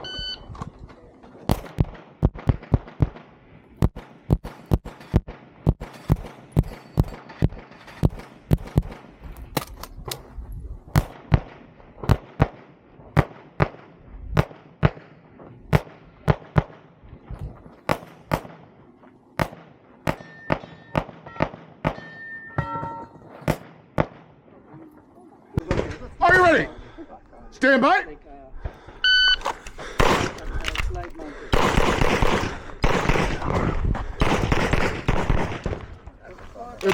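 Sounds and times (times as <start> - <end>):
pistol shots: 1.5 - 9.7, 10.9 - 16.9, 17.9 - 18.7, 19.4 - 22.2, 29.8 - 30.8, 31.4 - 36.0
metallic ringing tones: 20.2 - 23.3.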